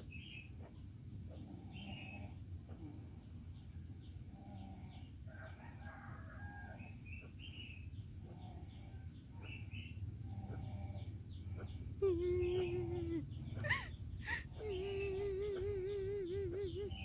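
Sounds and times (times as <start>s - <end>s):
low steady hum: 6.8s - 17.0s.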